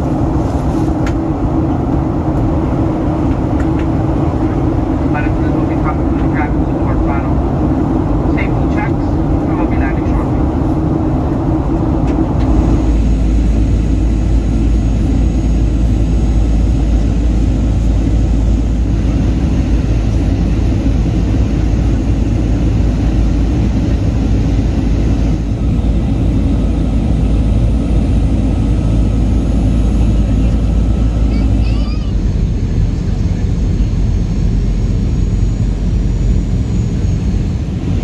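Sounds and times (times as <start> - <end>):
airflow rushing: 0.0 - 29.7
jet engines droning: 0.0 - 38.0.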